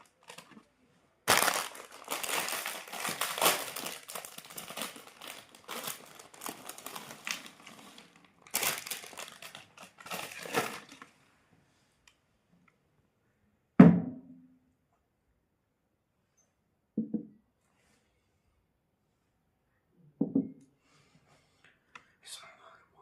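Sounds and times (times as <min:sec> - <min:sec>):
crisp packet crinkling: 0:00.0 - 0:00.6, 0:01.2 - 0:11.1.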